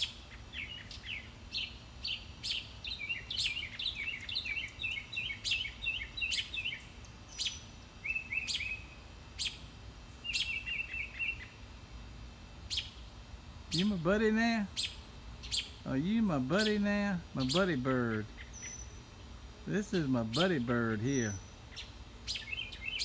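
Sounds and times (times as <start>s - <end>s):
songbird chip calls: 0.0s - 11.6s, 12.7s - 13.0s, 13.7s - 23.0s
bird chattering: 13.7s - 19.0s.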